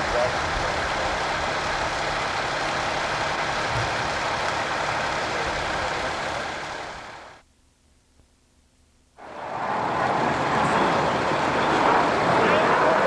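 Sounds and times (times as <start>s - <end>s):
heavy equipment engine idling: 0.0s - 7.4s.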